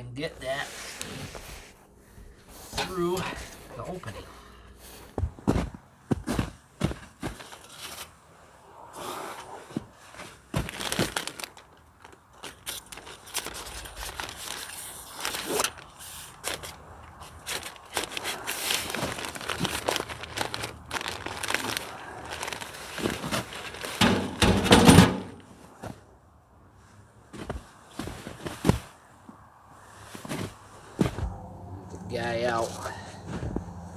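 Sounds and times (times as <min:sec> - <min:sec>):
tent fabric rustling and crinkling: 0:04.8 - 0:24.2, 0:26.8 - 0:31.5.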